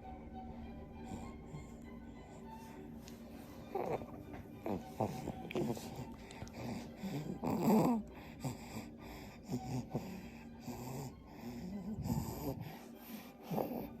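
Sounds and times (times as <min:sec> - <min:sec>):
baby snoring and snuffling: 0:03.5 - 0:14.0.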